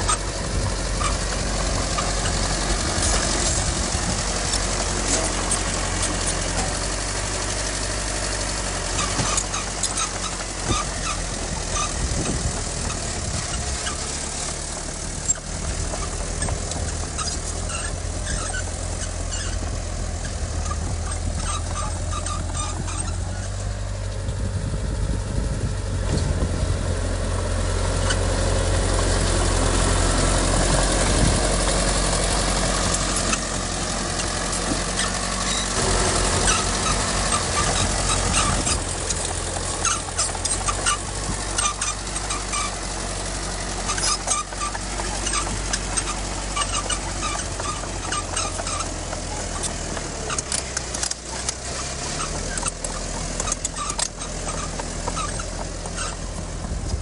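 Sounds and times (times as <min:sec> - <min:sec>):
clanks and clicks: 0:00.0 - 0:24.4, 0:30.6 - 0:57.0
heavy diesel machinery running: 0:00.0 - 0:57.0.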